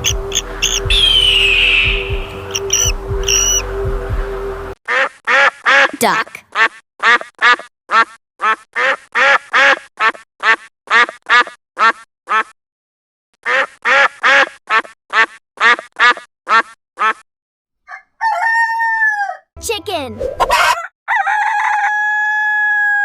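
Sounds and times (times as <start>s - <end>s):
duck quacking rapidly: 0.0s - 1.0s, 4.9s - 12.6s, 13.4s - 17.2s.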